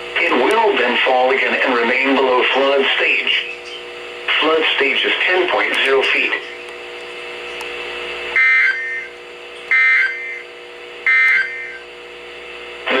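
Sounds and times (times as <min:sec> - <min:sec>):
steady hum: 0:00.0 - 0:13.0
warbling digital data bursts: 0:08.4 - 0:10.5.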